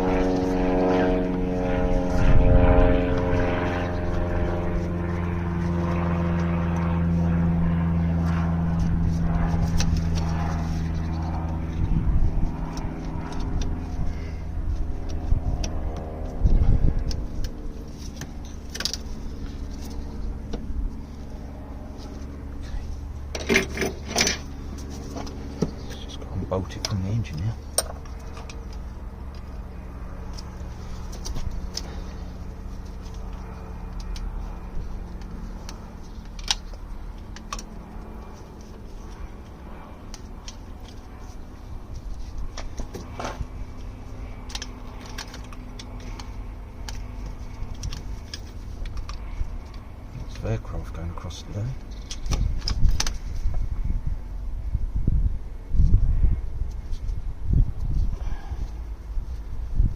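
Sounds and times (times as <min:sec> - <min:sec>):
low rumble: 0:00.0 - 0:42.6
passing vehicle engine drone: 0:00.0 - 0:56.7.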